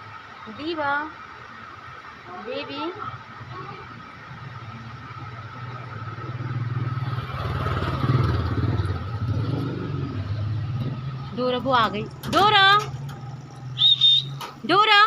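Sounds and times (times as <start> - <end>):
vehicle engine running: 3.0 - 15.0.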